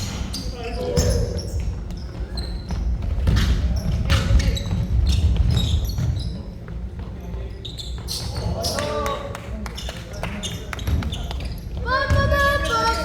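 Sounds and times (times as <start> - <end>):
sneaker squeaks: 0.0 - 13.0
basketball bouncing on court: 2.3 - 6.3, 10.5 - 12.7.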